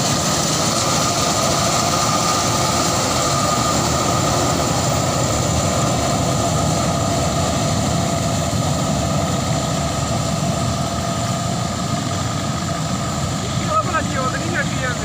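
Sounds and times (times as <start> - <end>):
combine harvester engine rumble: 0.0 - 15.0
machinery whine: 0.0 - 15.0.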